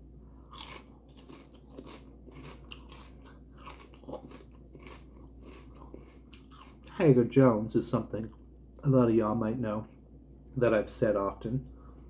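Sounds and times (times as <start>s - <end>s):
person chewing food: 0.4s - 7.0s
crunchy bites: 0.5s - 7.0s.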